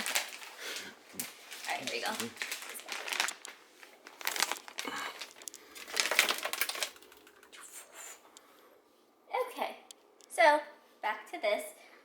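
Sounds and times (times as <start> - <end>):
packaging crinkling: 0.0 - 7.5.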